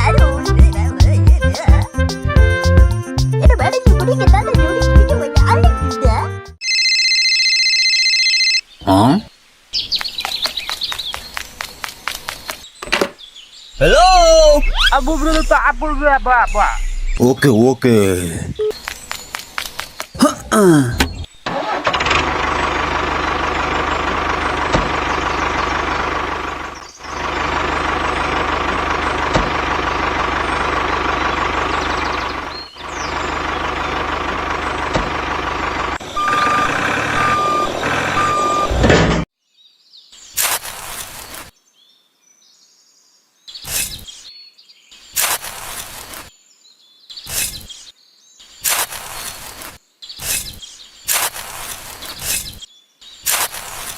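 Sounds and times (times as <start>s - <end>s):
vehicle engine running: 21.6s - 38.8s
reversing alarm beeps: 36.1s - 38.8s
short bursts of noise: 48.6s - 52.6s.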